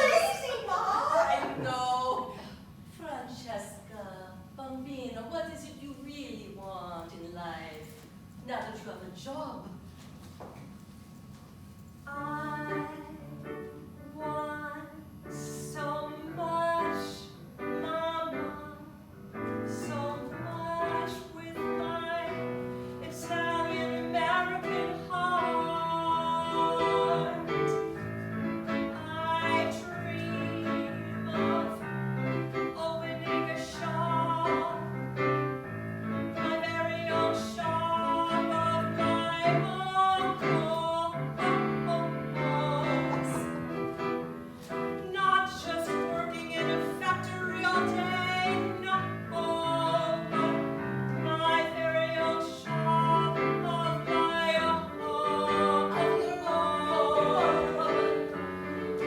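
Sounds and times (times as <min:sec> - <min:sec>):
woman singing slow song: 0:12.1 - 0:19.0, 0:19.7 - 0:27.8, 0:45.0 - 0:58.4
piano accompaniment: 0:12.2 - 0:59.0.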